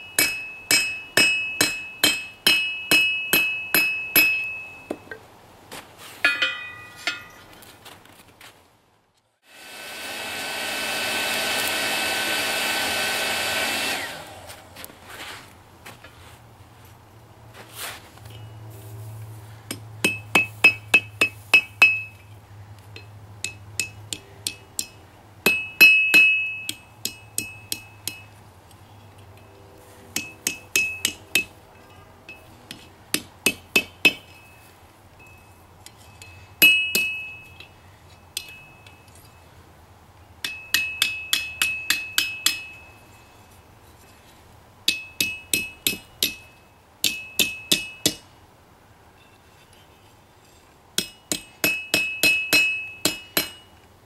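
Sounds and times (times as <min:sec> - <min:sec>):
hammer striking steel anvil: 0:00.0 - 0:05.2, 0:06.2 - 0:07.5, 0:19.7 - 0:22.2, 0:23.0 - 0:28.4, 0:30.2 - 0:34.5, 0:36.0 - 0:37.7, 0:38.4 - 0:39.2, 0:40.4 - 0:42.9, 0:44.9 - 0:48.2, 0:51.0 - 0:53.7.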